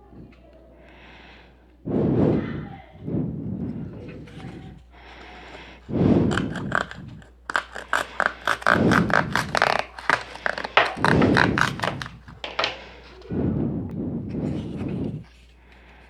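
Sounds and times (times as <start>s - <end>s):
dull handling sounds: 3.6s - 13.3s
cardboard being cut: 5.4s - 12.9s.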